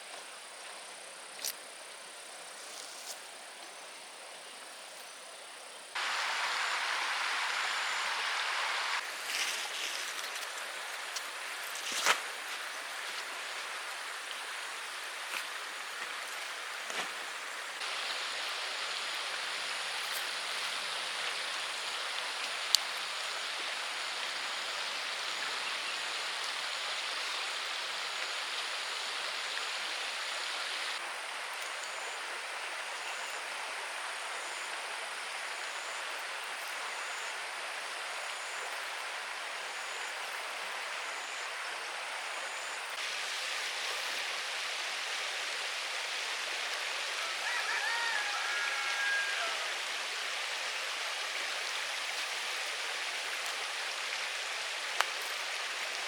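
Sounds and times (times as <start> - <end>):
steady rain falling: 5.9 - 56.0
light ticks: 22.7 - 22.9.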